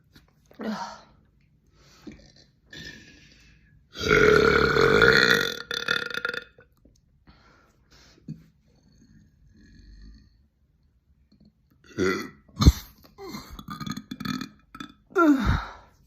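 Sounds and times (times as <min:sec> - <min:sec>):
woman burping: 0:04.0 - 0:06.6, 0:11.9 - 0:15.8.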